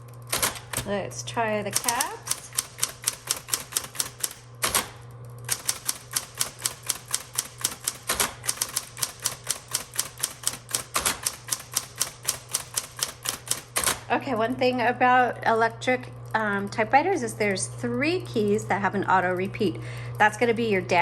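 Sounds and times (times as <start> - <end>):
electric typewriter key strikes: 0.0 - 14.1
typewriter motor hum: 0.0 - 20.6.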